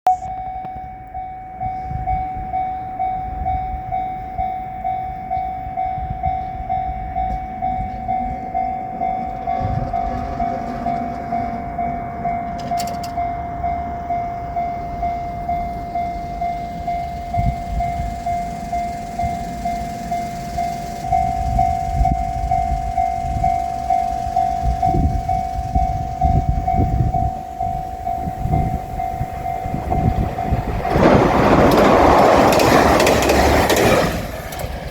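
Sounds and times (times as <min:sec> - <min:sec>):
level crossing warning bell: 0:00.0 - 0:34.9
train rumbling over crossing: 0:00.1 - 0:34.9
train wheel clatter: 0:07.1 - 0:34.9.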